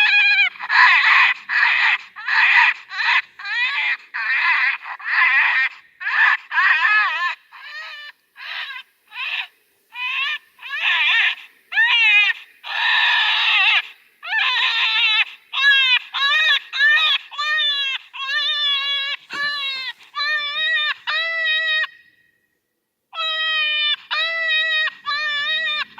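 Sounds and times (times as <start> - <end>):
high wavering screaming cries: 0.0 - 22.3, 23.1 - 25.9.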